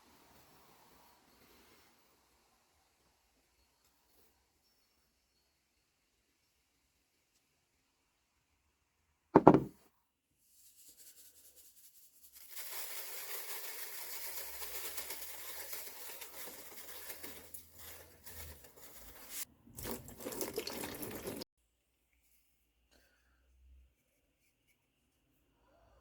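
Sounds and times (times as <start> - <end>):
sharp knock: 9.4 - 9.7
tap water running: 13.7 - 21.4.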